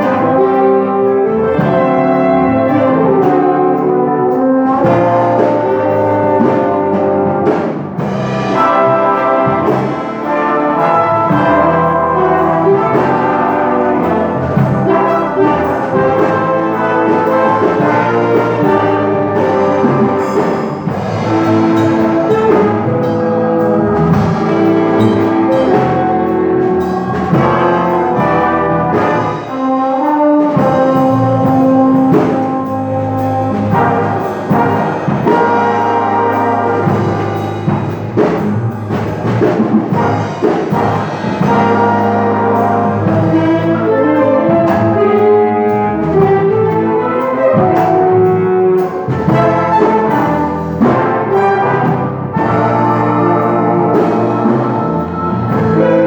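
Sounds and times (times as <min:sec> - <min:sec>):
big band playing: 0:00.0 - 0:56.0.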